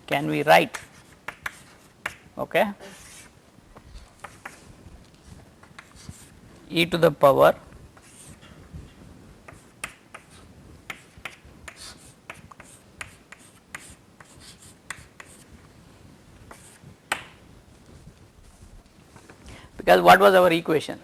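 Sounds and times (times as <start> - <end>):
writing tool scratching and tapping: 0.7 - 2.3, 3.8 - 4.6, 9.4 - 15.5.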